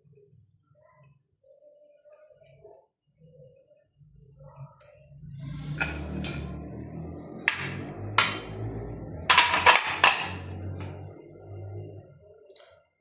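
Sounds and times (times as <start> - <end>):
low background music: 4.8 - 12.2.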